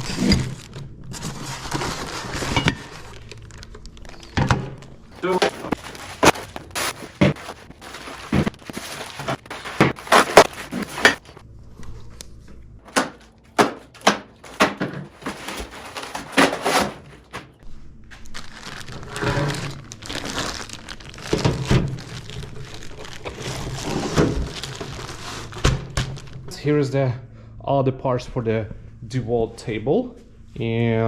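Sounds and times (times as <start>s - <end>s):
packaging crinkling: 0.0s - 11.4s, 12.8s - 17.6s, 18.2s - 26.4s
metal parts knocking and clunking: 4.3s - 11.4s, 12.8s - 17.6s.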